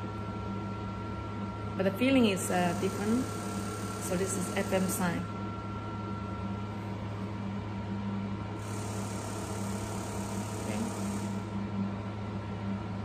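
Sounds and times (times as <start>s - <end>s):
low electrical hum: 0.0s - 13.0s
pulsing buzz: 2.2s - 5.4s, 8.6s - 11.6s.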